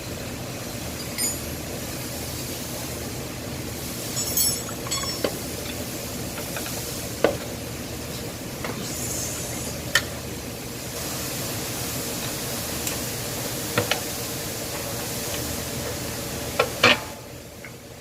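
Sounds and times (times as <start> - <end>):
tools tapping on engine parts: 1.0 - 1.5, 4.1 - 5.8
steady hiss: 8.2 - 15.4.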